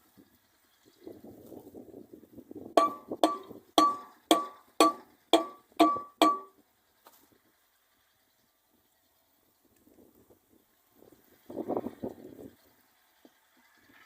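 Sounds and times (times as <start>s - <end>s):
hammer striking metal: 2.8s - 6.5s.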